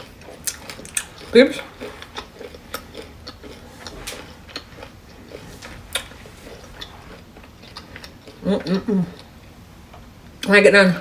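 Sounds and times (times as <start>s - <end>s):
person chewing: 0.0s - 9.6s.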